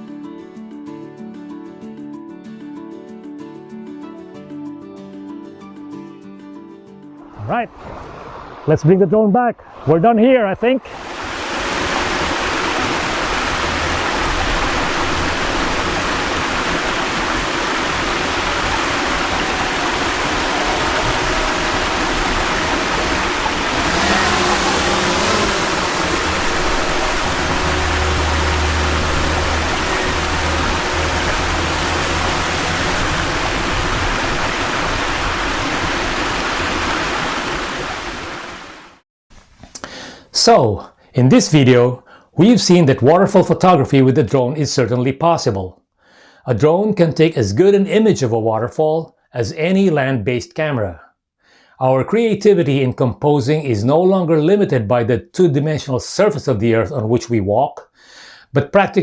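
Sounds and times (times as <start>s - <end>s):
waterfall and stream rushing: 7.7s - 8.8s, 10.9s - 39.0s.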